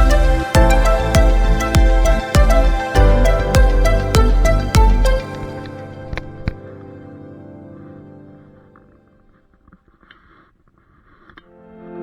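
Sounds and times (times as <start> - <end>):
sustained instrumental notes: 0.0 - 9.4.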